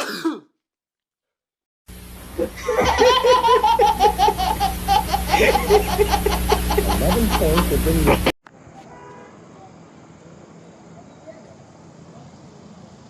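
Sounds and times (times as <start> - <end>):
steady hum: 1.9 - 8.4
high-pitched rapid laughter: 2.4 - 8.3.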